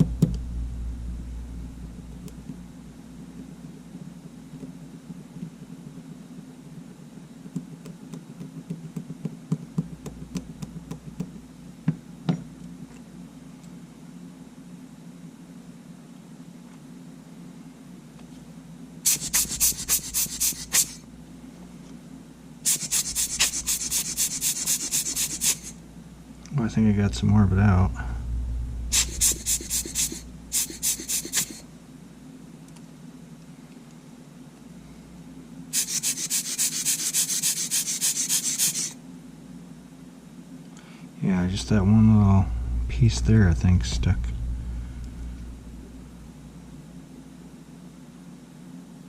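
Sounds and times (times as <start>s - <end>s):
steady low hum: 0.0s - 49.0s
hissing cleaning strokes: 19.1s - 21.0s, 22.7s - 25.7s, 28.9s - 31.6s, 35.8s - 38.9s
rapid scratchy rubbing: 19.1s - 21.0s, 22.7s - 25.8s, 28.9s - 31.6s, 35.8s - 39.0s.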